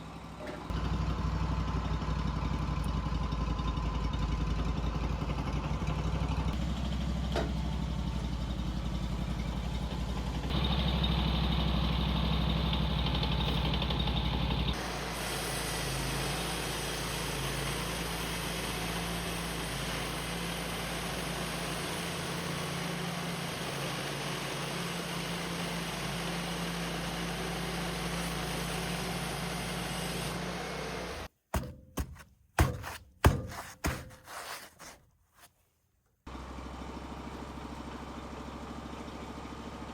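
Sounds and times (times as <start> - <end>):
engine running: 0.0 - 32.2, 36.3 - 39.9.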